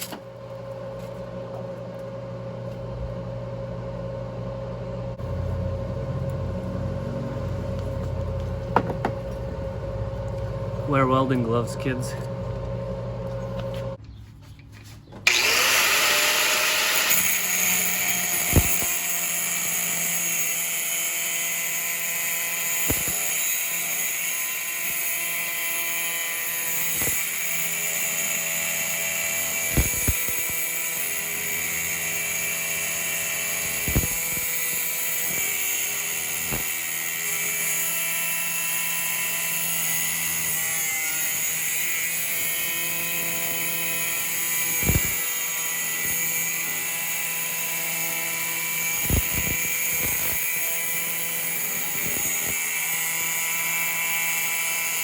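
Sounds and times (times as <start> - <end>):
angle grinder whining: 15.2 - 55.0.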